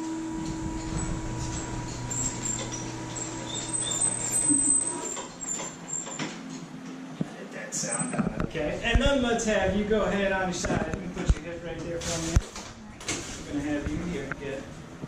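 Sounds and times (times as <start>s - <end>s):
electric motor humming: 0.0s - 5.4s
short high squeaks: 0.4s - 6.6s.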